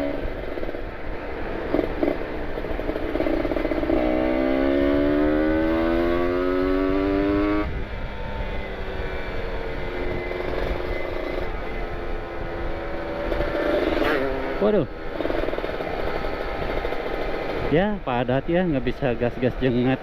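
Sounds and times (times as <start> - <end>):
motorcycle engine revving: 0.0 - 20.0.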